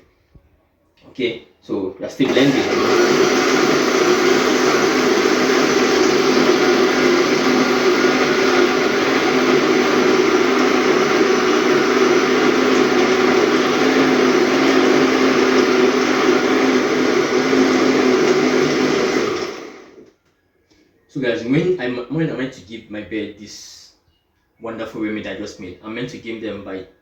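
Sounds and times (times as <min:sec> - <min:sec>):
blender whirring: 0:02.2 - 0:20.1.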